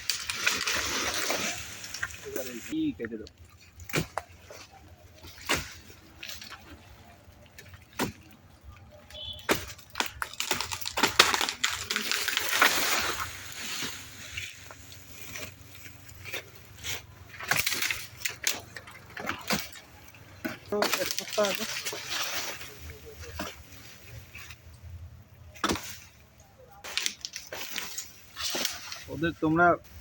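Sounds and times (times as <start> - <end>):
water sloshing and splashing: 0.0 - 24.9.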